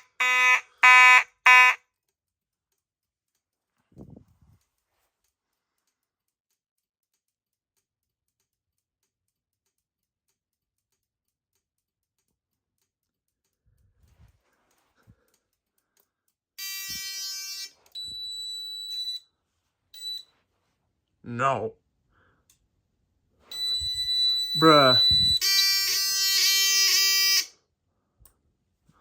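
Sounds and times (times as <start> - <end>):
fire alarm horn: 0.0 - 1.8, 16.6 - 19.2, 23.5 - 27.6.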